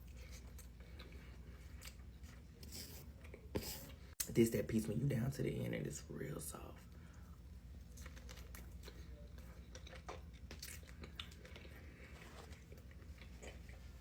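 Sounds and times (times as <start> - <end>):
chewing with wet mouth clicks: 0.1 - 4.0, 7.8 - 14.0.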